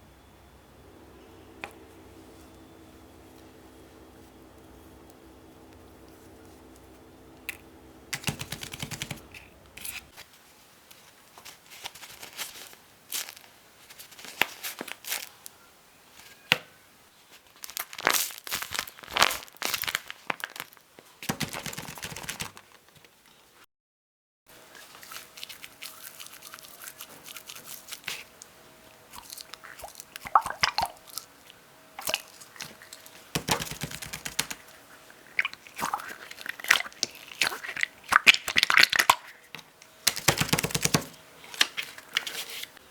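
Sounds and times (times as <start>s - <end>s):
toys and packaging crinkling: 8.2s - 16.5s, 17.1s - 23.4s, 24.6s - 30.3s, 32.1s - 42.8s.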